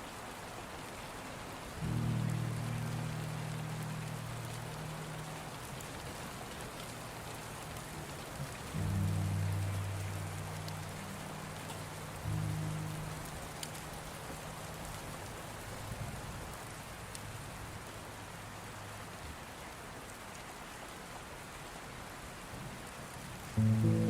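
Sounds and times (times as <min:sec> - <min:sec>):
steady rain falling: 0:00.0 - 0:24.0
soft background music: 0:01.8 - 0:15.9, 0:23.6 - 0:24.0.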